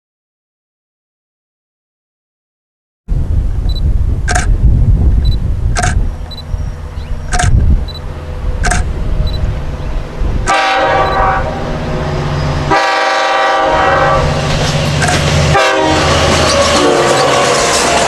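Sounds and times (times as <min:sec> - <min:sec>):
diesel locomotive engine: 0:03.1 - 0:18.0
train horn blasts: 0:10.4 - 0:11.7, 0:12.4 - 0:14.5, 0:15.4 - 0:18.0.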